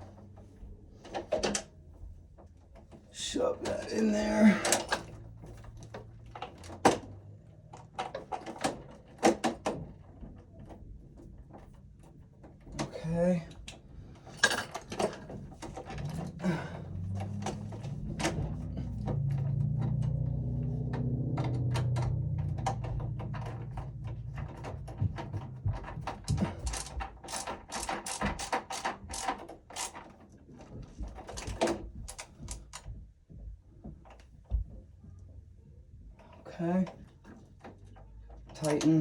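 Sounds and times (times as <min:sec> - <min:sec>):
clicks and rattles of wires: 0:00.0 - 0:35.3, 0:36.2 - 0:39.0
low steady hum: 0:10.2 - 0:27.9.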